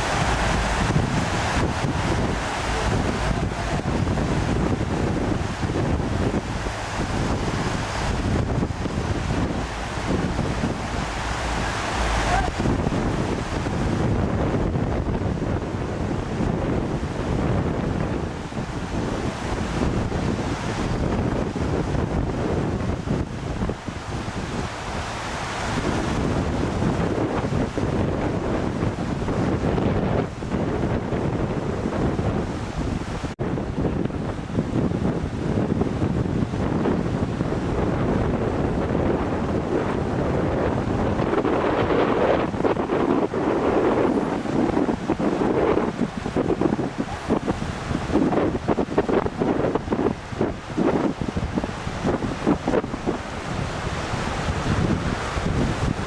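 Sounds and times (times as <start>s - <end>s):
rushing river water: 0.0s - 56.0s
wind buffeting microphone: 0.0s - 56.0s.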